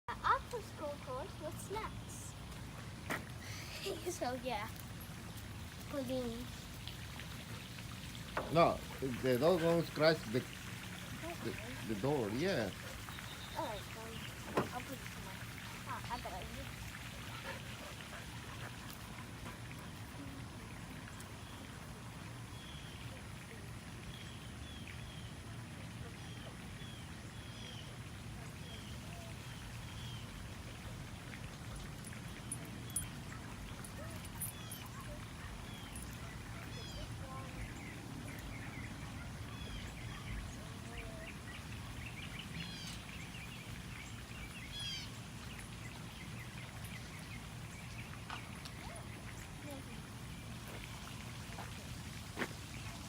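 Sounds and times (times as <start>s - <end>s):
small birds chirping: 0.2s - 25.4s, 32.1s - 53.0s
background hiss: 0.5s - 20.2s.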